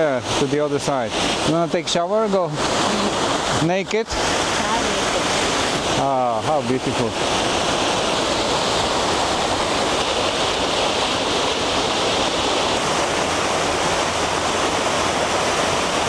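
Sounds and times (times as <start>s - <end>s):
mountain stream rushing: 0.0s - 16.0s.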